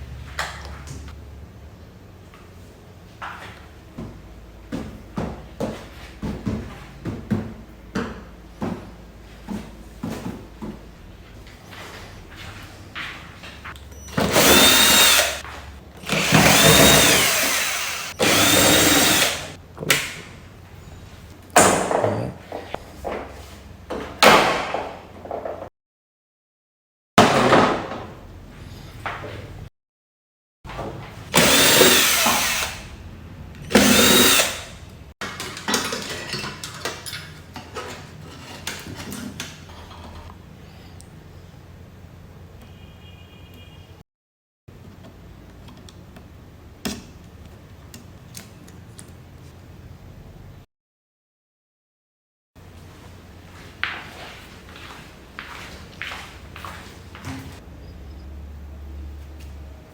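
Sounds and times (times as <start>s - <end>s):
electric drill-driver motor whine: 14.2s - 15.4s, 16.0s - 19.6s, 31.3s - 32.9s, 33.7s - 34.8s.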